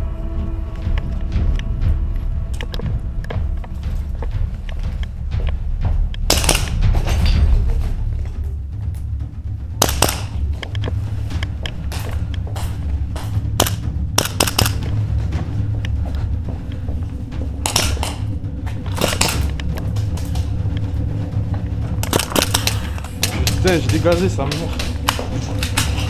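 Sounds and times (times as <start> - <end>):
airsoft pistols firing: 6.3 - 6.8, 9.8 - 10.4, 13.6 - 14.9, 17.6 - 18.2, 18.9 - 19.5, 22.0 - 25.9.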